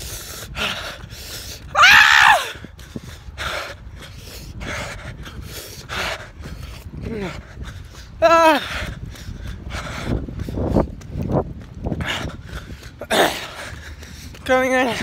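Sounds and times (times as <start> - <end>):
heavy ragged breathing: 0.0 - 1.7, 2.7 - 10.9, 11.9 - 14.4
person wailing in pain: 8.2 - 8.6.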